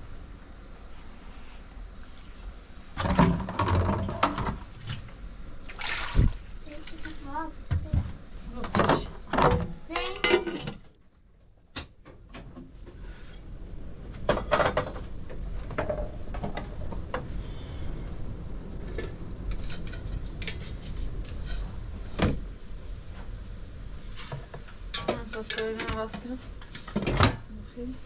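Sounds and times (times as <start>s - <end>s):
low background rumble: 12.1s - 28.0s.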